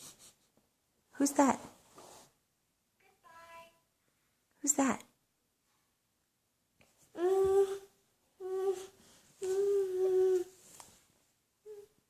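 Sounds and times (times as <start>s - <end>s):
child whining: 7.1s - 10.6s, 11.6s - 12.0s.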